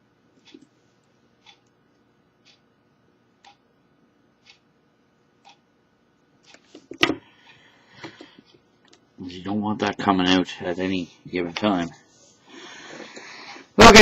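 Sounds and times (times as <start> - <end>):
clock ticking: 3.4 - 3.6, 5.4 - 5.7.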